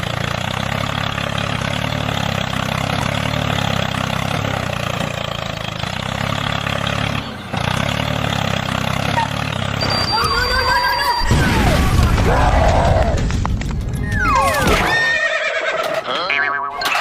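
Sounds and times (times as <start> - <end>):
small engine running: 0.0 - 11.1.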